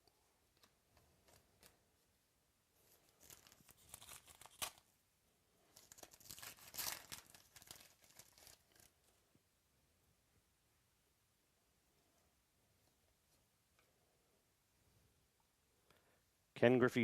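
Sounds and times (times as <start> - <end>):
foil pack crinkling: 2.9 - 4.9, 5.7 - 9.1.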